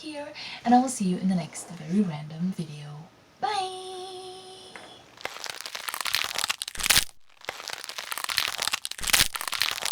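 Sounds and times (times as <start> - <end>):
crinkling crackling rustle: 5.1 - 9.9.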